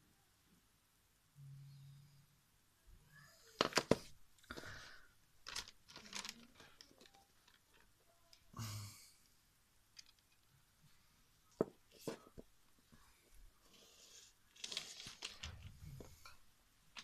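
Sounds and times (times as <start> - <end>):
rustling: 3.5 - 8.5, 9.9 - 17.0.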